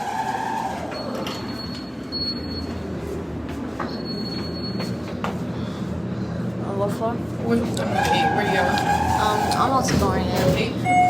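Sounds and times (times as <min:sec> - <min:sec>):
elevator mechanical rumble: 0:00.0 - 0:11.0.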